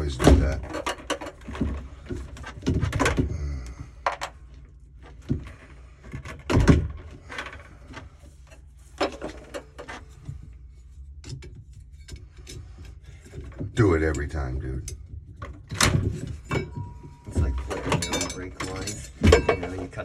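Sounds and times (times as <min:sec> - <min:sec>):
clicks and knocks on metal parts: 0:14.8 - 0:20.0.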